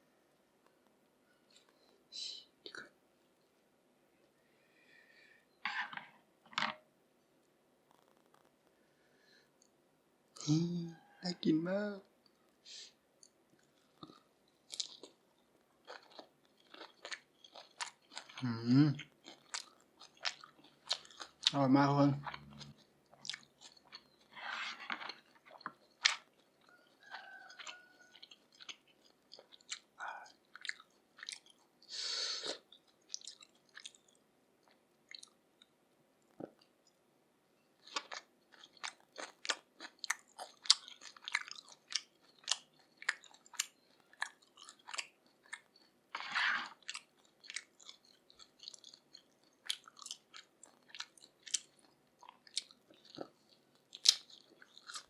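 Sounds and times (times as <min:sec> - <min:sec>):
wet chewing and mouth smacks: 0:13.2 - 0:18.4, 0:19.0 - 0:21.6, 0:22.2 - 0:37.0, 0:37.8 - 0:55.0
crunchy bites: 0:37.8 - 0:55.0.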